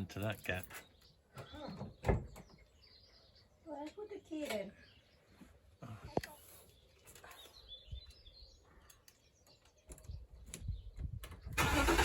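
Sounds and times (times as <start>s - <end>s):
bird chirping: 0.0s - 11.6s
engine cranking: 11.6s - 12.0s.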